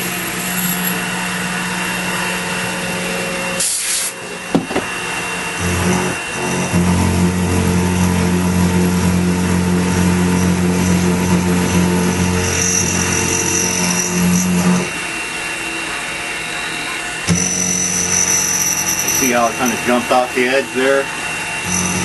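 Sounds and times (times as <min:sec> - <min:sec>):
end mill cutting aluminium: 0:00.0 - 0:16.1, 0:17.2 - 0:22.0
spindle running: 0:04.5 - 0:15.1, 0:17.2 - 0:22.0.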